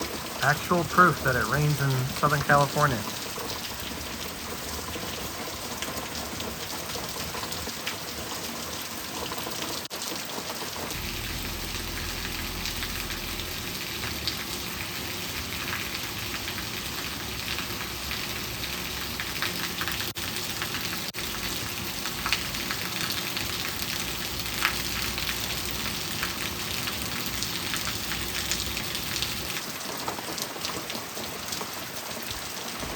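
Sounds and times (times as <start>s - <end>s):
heavy rain falling: 0.0s - 32.9s
low rumble: 11.0s - 14.5s.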